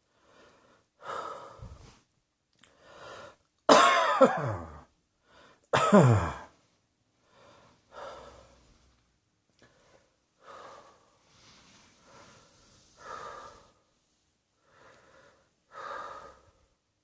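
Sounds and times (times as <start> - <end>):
person breathing heavily: 0.0 - 2.1, 2.7 - 3.5, 5.2 - 6.6, 7.2 - 8.9, 9.6 - 16.8.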